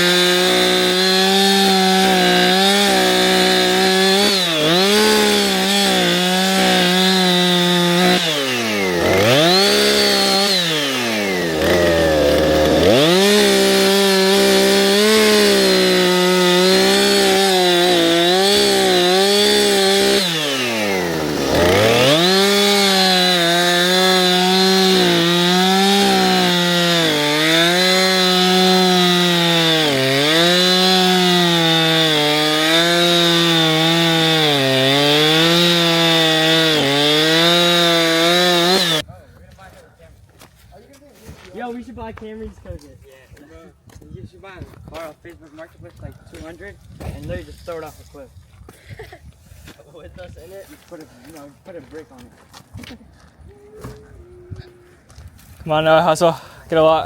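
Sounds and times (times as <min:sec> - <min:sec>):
two-stroke engine revving: 0:00.0 - 0:39.0.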